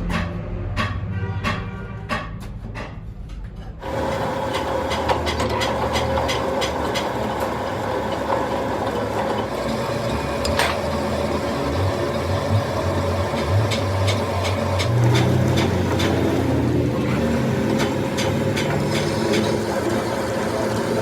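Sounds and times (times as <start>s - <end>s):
machine running with low rumble: 0.0s - 21.0s.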